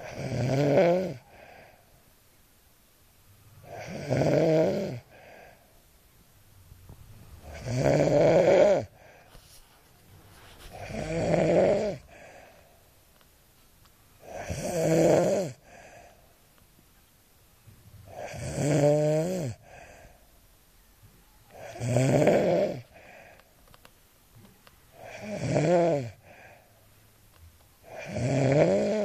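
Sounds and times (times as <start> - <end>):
person snoring loudly: 0.0 - 1.2, 3.6 - 5.2, 7.4 - 9.0, 10.7 - 12.3, 14.2 - 15.7, 18.1 - 19.7, 21.6 - 22.9, 25.0 - 26.2, 27.8 - 29.0.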